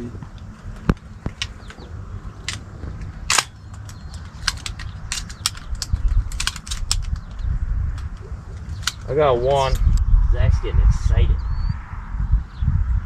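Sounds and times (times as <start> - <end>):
sharp clicks and crunches: 0.0 - 10.0
wind rumble on microphone: 0.0 - 13.0.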